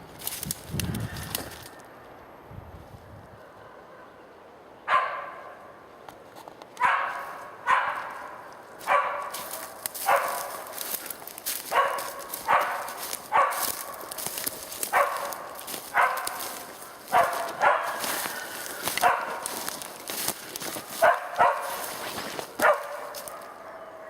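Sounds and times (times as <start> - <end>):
dog barking: 4.9 - 5.6, 6.8 - 10.9, 11.5 - 19.9, 20.7 - 24.0.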